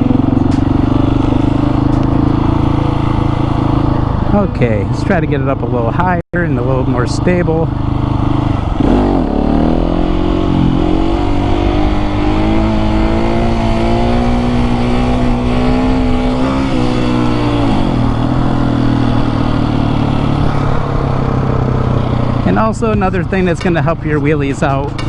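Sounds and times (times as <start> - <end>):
motorcycle engine revving: 0.0 - 25.0.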